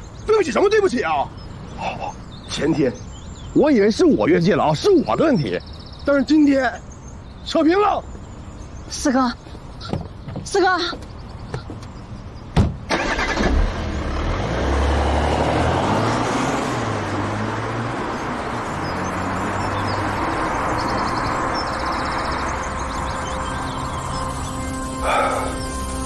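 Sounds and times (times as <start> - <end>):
road noise: 0.0 - 26.0
sharp thump: 12.6 - 12.9.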